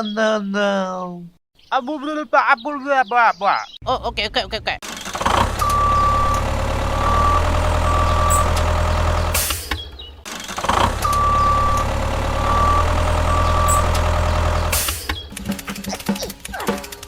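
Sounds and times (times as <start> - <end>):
engine idling: 4.8 - 17.0
reversing alarm beeping: 5.6 - 9.5, 11.0 - 15.1.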